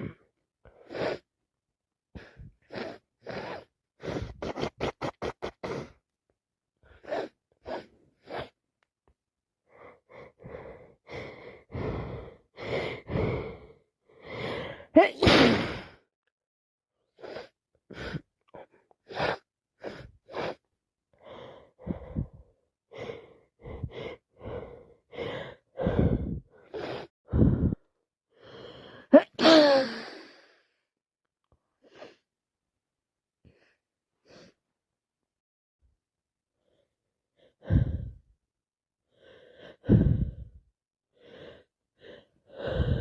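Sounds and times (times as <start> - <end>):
woman sneezing loudly: 15.0 - 15.9, 29.1 - 30.0.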